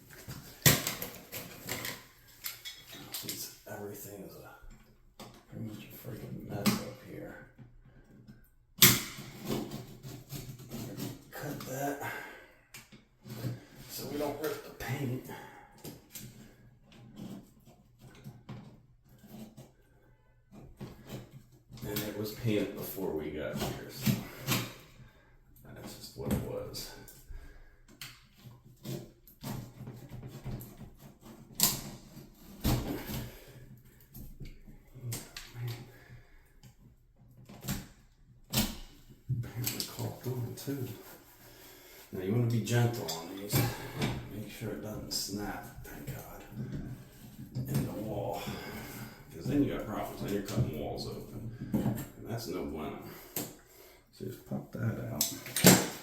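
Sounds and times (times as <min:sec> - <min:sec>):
hand tools scraping and tapping: 0:00.1 - 0:03.4.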